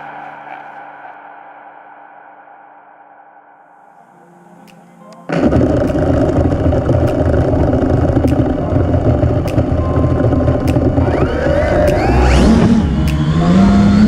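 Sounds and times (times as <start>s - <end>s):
quadcopter motors buzzing: 10.6s - 14.0s.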